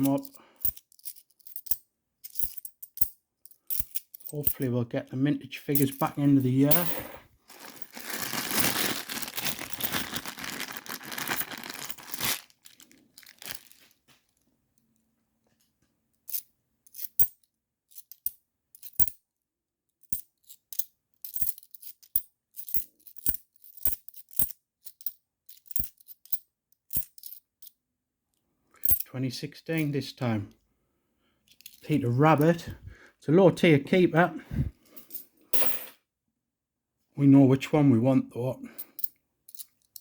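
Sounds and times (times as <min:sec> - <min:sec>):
coins clicking on a hard surface: 0:00.0 - 0:04.3, 0:16.3 - 0:19.2, 0:20.0 - 0:27.7, 0:28.8 - 0:29.0, 0:35.0 - 0:36.0
coins rattling and sliding: 0:00.0 - 0:04.3, 0:06.7 - 0:12.4, 0:20.1 - 0:27.4, 0:35.0 - 0:35.9.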